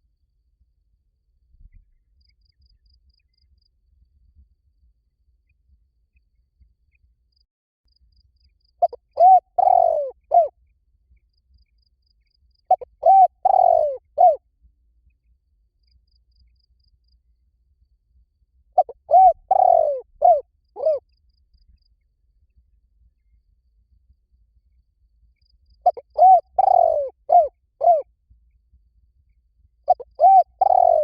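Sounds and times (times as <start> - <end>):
dove cooing: 8.8 - 10.5, 12.7 - 14.4, 18.8 - 21.0, 25.8 - 28.1, 29.9 - 31.0.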